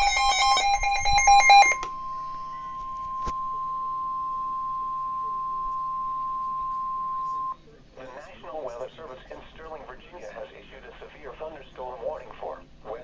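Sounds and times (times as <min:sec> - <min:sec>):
steady alarm tone: 0:00.0 - 0:07.6.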